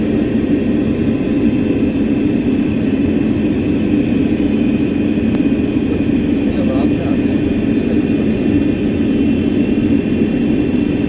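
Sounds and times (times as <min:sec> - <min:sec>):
aircraft drone: 0:00.0 - 0:11.0.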